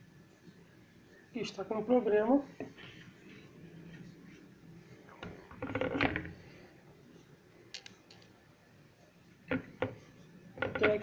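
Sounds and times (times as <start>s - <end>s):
small hard objects clicking and rattling: 7.7s - 8.3s.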